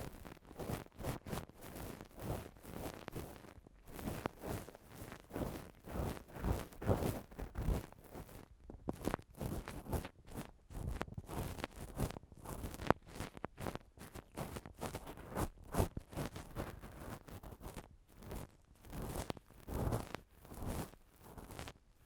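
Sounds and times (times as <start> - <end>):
ear-cleaning tool scratching microphone: 8.9 - 21.8.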